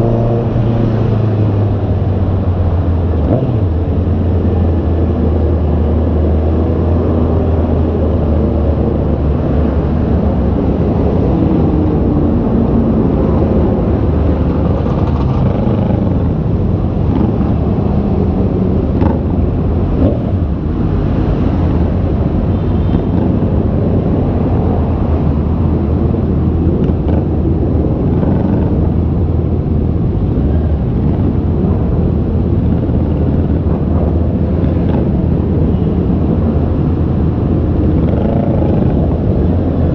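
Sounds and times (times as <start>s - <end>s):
steady low rumble: 0.0s - 39.9s
motorcycle engine running: 13.4s - 24.7s.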